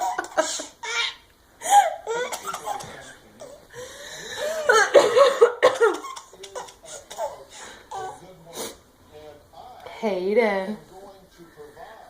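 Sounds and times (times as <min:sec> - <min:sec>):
baby laughing: 0:00.0 - 0:03.7, 0:04.4 - 0:08.2
woman coughing: 0:04.6 - 0:06.2.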